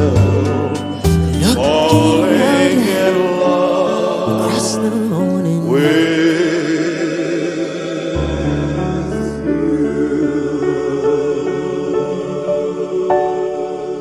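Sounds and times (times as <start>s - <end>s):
bass: 0.0s - 3.2s
backing accompaniment: 0.0s - 5.4s.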